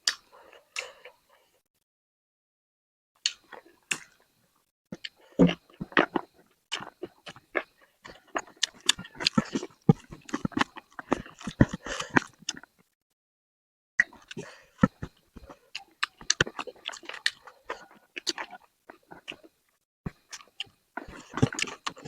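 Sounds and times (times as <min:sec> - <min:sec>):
chewing and crunching: 0:04.9 - 0:12.9, 0:14.0 - 0:22.0.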